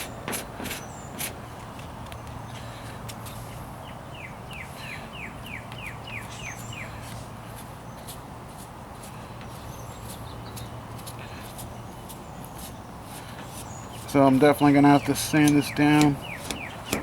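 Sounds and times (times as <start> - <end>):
bird singing falling notes: 13.4 - 17.0.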